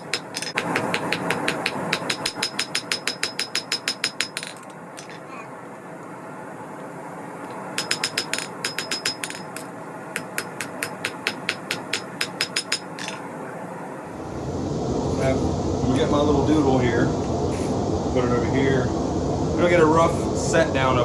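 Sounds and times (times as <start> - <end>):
steady hiss: 13.7 - 21.0.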